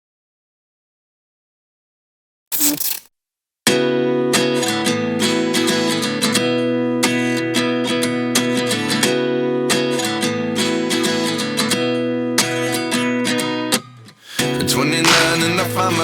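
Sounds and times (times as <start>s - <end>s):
acoustic guitar strumming chords: 14.3s - 16.0s.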